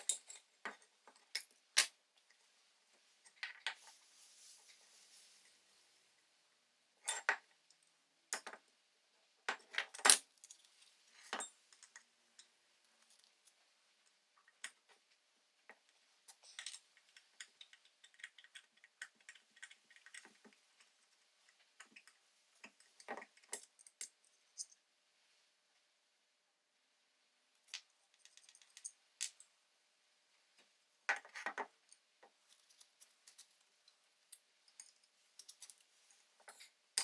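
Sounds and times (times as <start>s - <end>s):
small metal parts clinking: 16.2s - 21.0s, 27.7s - 29.5s, 31.2s - 37.0s.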